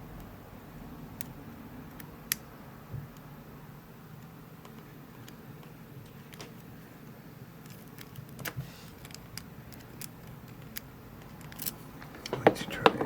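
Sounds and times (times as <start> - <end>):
lock pick clicking and scraping: 7.7 - 12.4.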